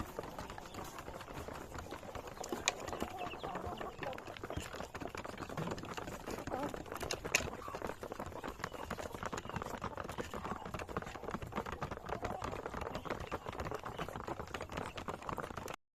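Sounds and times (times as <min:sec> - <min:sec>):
chickens clucking: 0:00.0 - 0:15.7.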